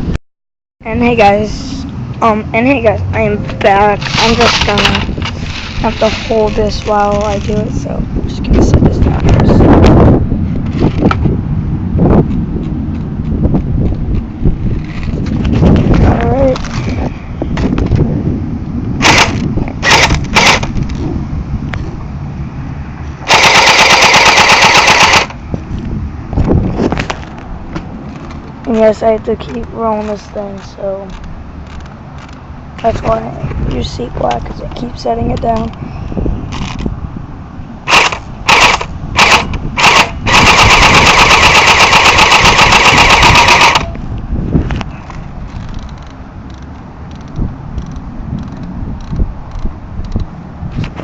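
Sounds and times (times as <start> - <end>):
airsoft gun firing bursts: 19.0 - 20.6, 23.3 - 25.3, 37.9 - 43.9.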